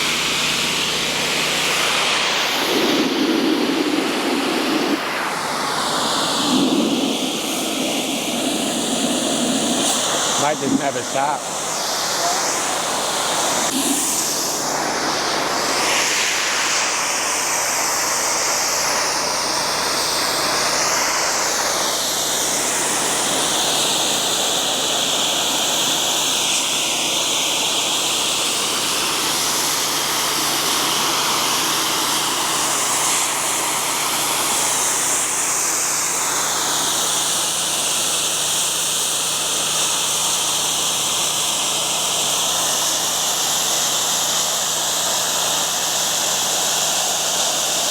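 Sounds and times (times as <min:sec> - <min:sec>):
pressure washer spraying wall: 0:00.0 - 0:47.9.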